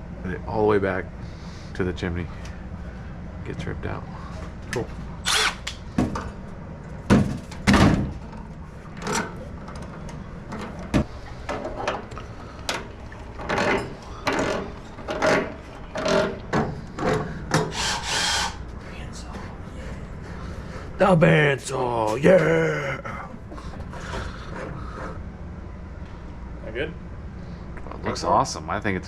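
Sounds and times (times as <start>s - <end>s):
vent pipe scraping and rattling: 7.2s - 21.5s.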